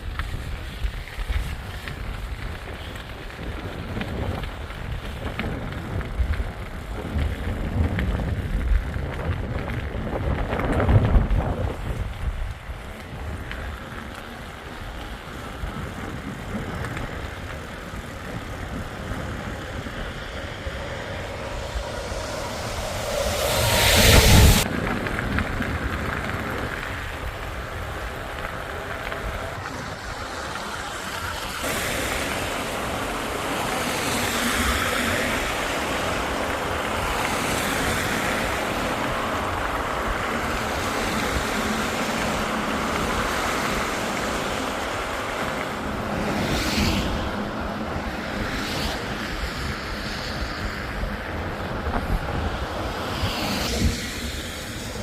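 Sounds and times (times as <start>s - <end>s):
traffic road noise: 0.0s - 55.0s
wind rushing over microphone: 0.0s - 55.0s.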